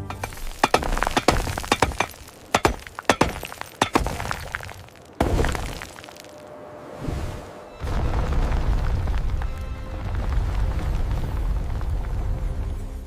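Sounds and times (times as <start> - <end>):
sharp hits and clinks: 0.0 - 4.8.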